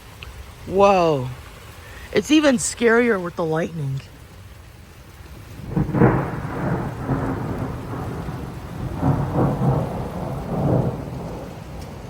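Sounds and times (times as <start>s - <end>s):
thunder rumbling: 5.1s - 12.0s.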